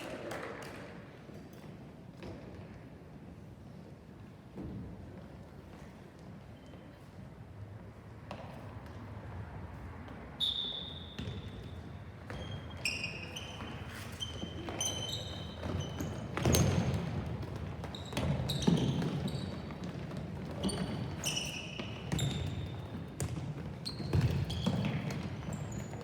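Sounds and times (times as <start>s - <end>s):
sneakers squeaking on gym floor: 5.7s - 7.4s, 10.1s - 26.0s.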